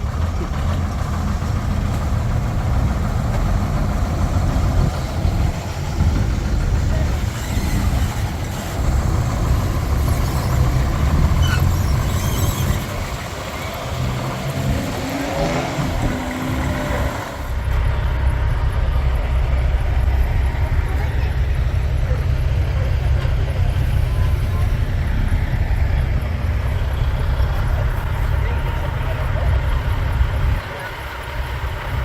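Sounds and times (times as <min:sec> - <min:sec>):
diesel truck engine pulling away: 0:00.0 - 0:32.0.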